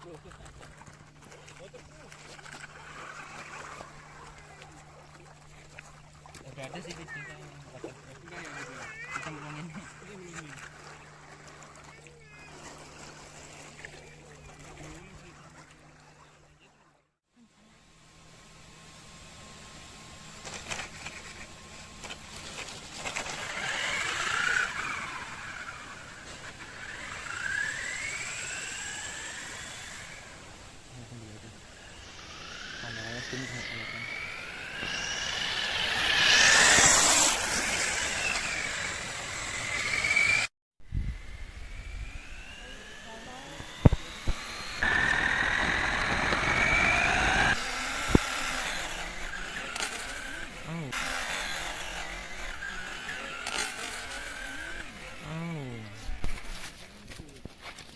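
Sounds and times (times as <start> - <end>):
electric motor whining: 19.0 - 56.9
loud rushing noise: 32.3 - 40.5.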